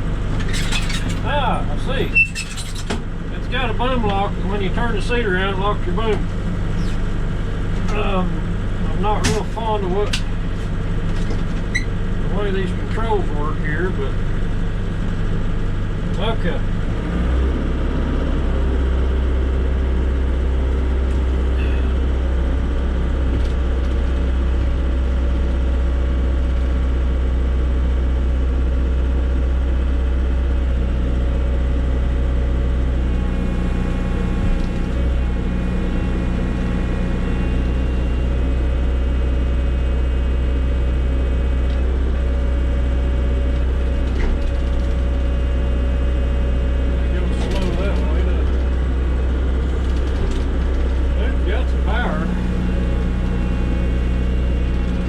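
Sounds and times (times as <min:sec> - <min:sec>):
diesel engine droning: 0:00.0 - 0:55.0
high-pitched whine: 0:33.1 - 0:38.8, 0:51.2 - 0:55.0.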